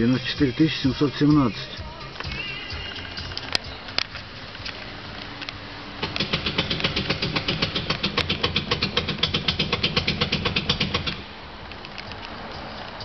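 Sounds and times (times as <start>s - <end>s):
metallic knocking of steering rack: 6.0s - 11.3s.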